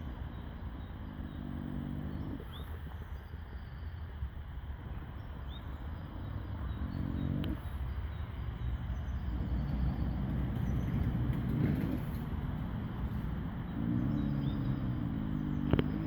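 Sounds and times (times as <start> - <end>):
faint bird chirps: 0.0 - 4.1
horse snoring: 6.8 - 7.7, 9.3 - 12.3.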